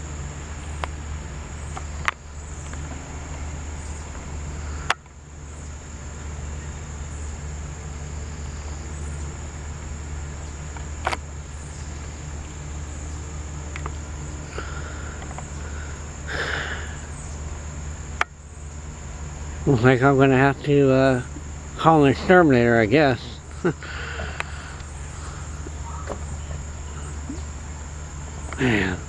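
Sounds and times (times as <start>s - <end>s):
bees buzzing: 0.0s - 29.0s
high insect trill: 0.0s - 29.0s
sharp clicks: 10.7s - 16.0s.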